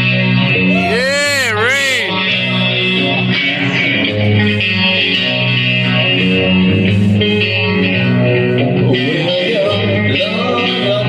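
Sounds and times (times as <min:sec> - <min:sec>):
live rock band playing: 0:00.0 - 0:11.0
bass line: 0:00.5 - 0:05.0.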